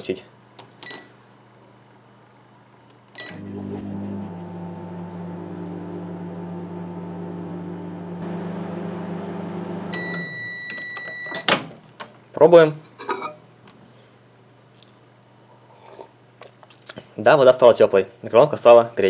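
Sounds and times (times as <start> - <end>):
microwave oven humming: 3.1 - 11.8
microwave button beep: 9.8 - 11.5.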